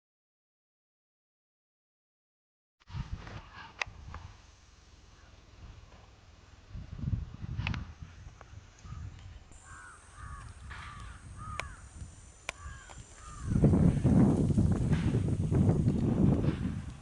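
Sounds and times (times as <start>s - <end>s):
crows cawing: 9.6s - 14.0s
sharp clicks: 10.2s - 13.4s.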